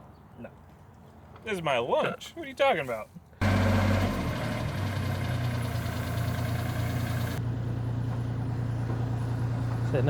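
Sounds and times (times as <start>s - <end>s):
vehicle engine humming: 3.4s - 10.0s.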